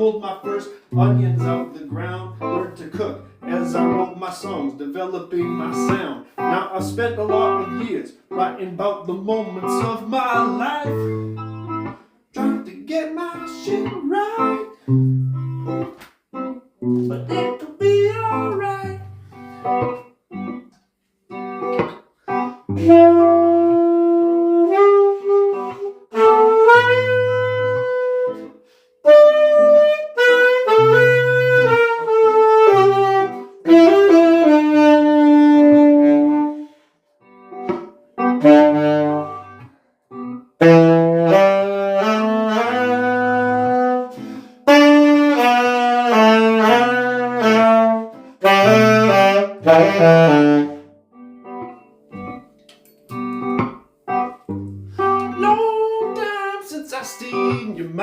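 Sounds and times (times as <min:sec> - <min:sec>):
instrumental lead melody: 0:00.0 - 0:58.0
bass line: 0:01.0 - 0:04.1, 0:06.7 - 0:07.9, 0:16.9 - 0:20.0.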